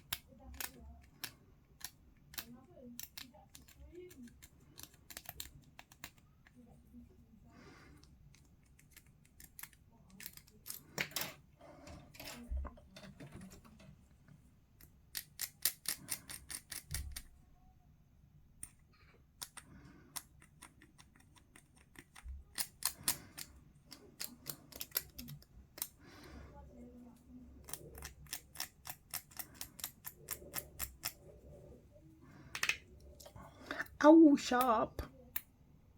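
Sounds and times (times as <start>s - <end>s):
light scraping of plastic parts: 8.0s - 14.4s.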